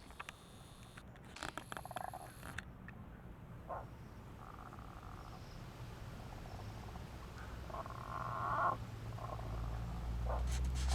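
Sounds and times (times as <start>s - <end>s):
frogs croaking: 3.6s - 10.5s.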